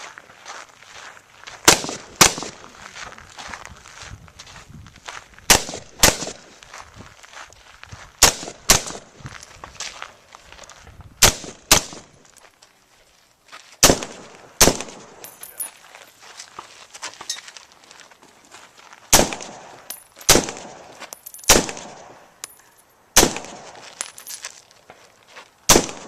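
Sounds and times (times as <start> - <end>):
rifle shots with echo: 1.7 - 2.7, 5.5 - 6.4, 8.2 - 9.1, 11.2 - 12.1, 13.8 - 15.3, 19.1 - 22.2, 23.2 - 23.8, 25.7 - 26.0.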